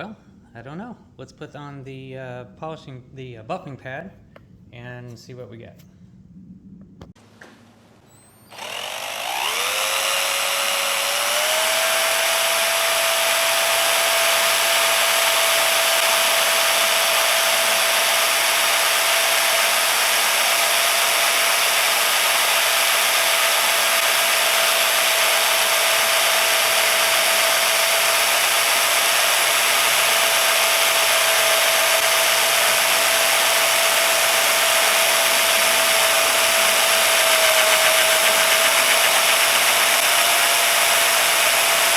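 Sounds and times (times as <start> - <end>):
electric drill whining: 8.1 - 41.9
buffing pad hissing on metal: 36.8 - 39.9.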